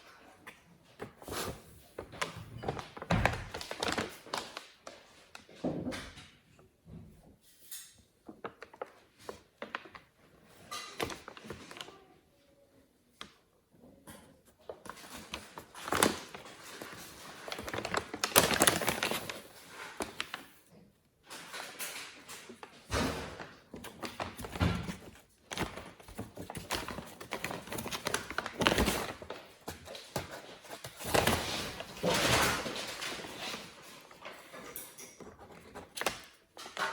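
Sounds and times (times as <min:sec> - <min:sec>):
plastic bag crinkling: 0:02.1 - 0:05.5, 0:14.9 - 0:20.6, 0:21.3 - 0:36.9.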